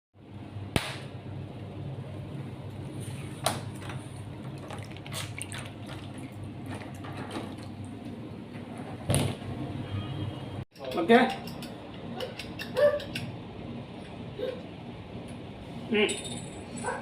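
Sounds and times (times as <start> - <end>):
water splashing in a bathtub: 4.5 - 7.6.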